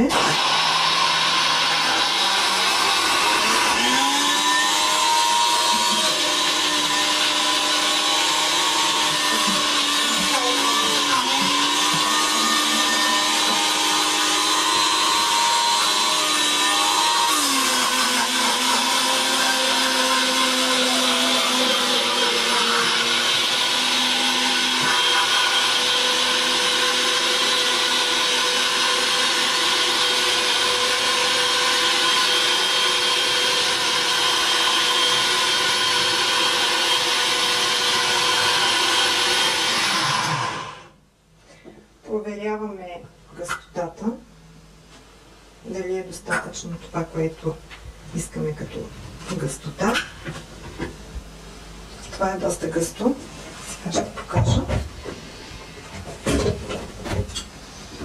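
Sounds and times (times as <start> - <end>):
blender running at high speed: 0.0 - 41.0.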